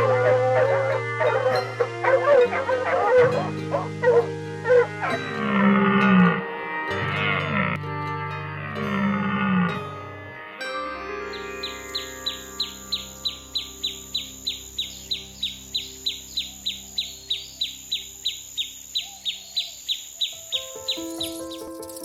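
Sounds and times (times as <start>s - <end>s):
drone of held tones: 0.0s - 13.5s.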